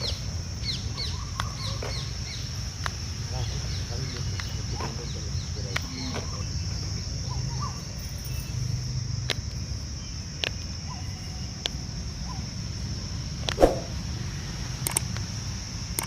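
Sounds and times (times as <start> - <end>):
sharp clicks: 14.8 - 15.3.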